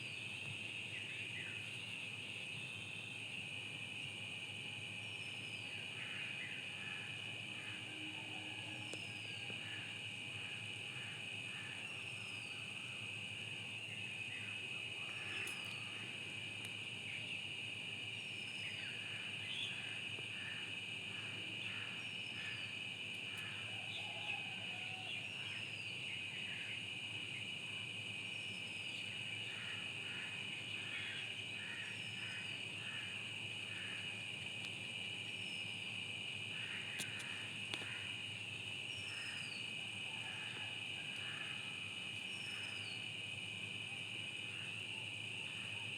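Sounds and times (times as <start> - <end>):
high-pitched insect drone: 35.4 - 45.9.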